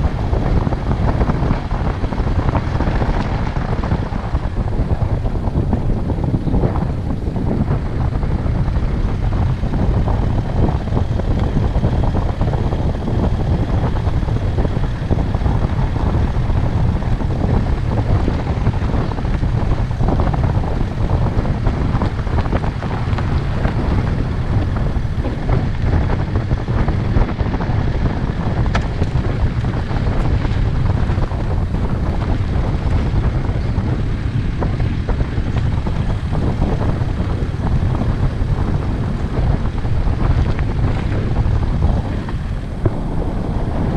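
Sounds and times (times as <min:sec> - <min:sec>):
vehicle engine running: 0:00.0 - 0:43.9
wind buffeting microphone: 0:00.0 - 0:43.9.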